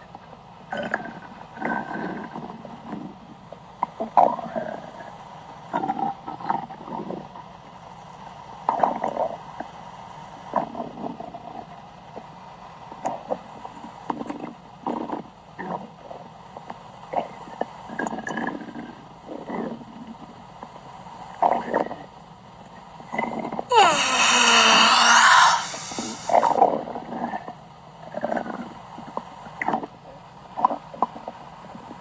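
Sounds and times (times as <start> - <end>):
stomach growling: 23.7 - 26.6.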